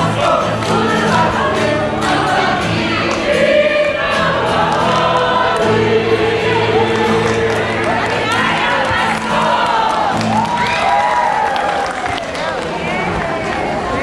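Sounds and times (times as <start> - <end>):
choir singing: 0.0 - 10.2.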